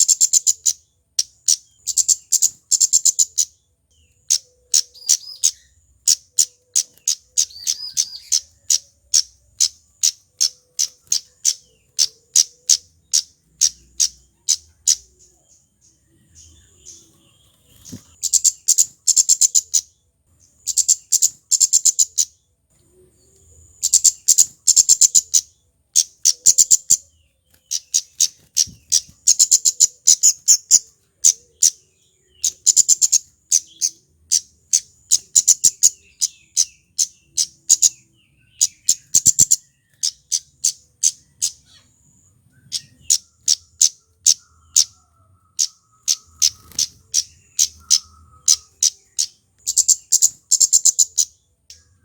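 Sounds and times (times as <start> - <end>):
bird calling high sharp notes: 4.2 - 15.4, 23.8 - 27.0, 42.6 - 52.0.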